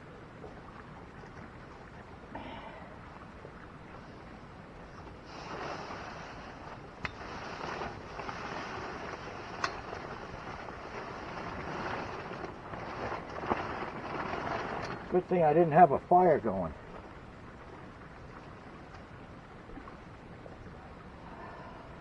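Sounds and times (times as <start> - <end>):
tent fabric rustling and scraping: 5.2 - 15.4.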